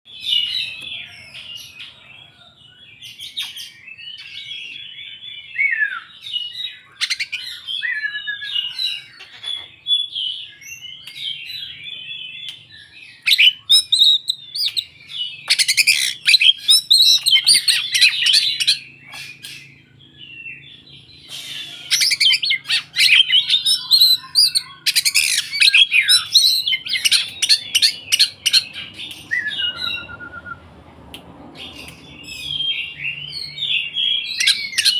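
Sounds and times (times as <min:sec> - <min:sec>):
bird singing: 0:00.1 - 0:30.7, 0:31.6 - 0:34.9.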